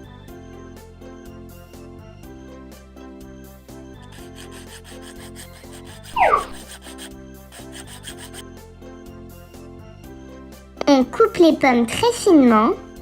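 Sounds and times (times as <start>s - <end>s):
children's background music: 0.0s - 4.6s, 7.8s - 13.0s
loud rising squeak: 4.1s - 8.4s.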